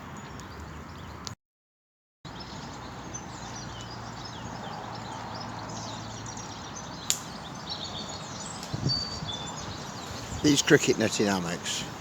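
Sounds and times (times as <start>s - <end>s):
small birds chirping: 0.0s - 1.4s, 2.3s - 12.0s
steady background hiss: 9.8s - 12.0s.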